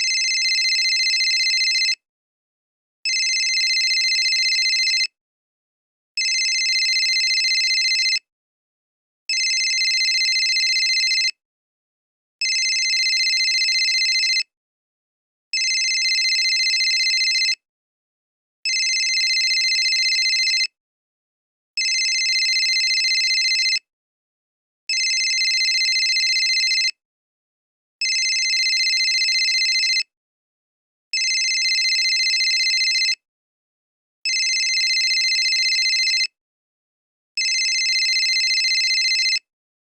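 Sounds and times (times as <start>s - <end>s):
cell phone ringing: 0.1s - 2.0s, 3.1s - 5.1s, 6.2s - 8.2s, 9.3s - 11.3s, 12.4s - 14.4s, 15.6s - 17.6s, 18.7s - 20.7s, 21.8s - 23.8s, 24.9s - 26.9s, 28.0s - 30.0s, 31.2s - 33.2s, 34.3s - 36.3s, 37.4s - 39.4s.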